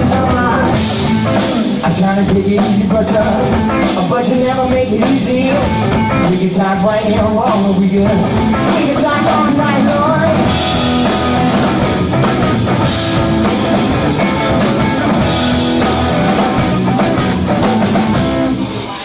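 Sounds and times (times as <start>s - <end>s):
bass: 0.0s - 19.0s
drum kit: 0.0s - 19.0s
electric guitar: 0.0s - 19.0s.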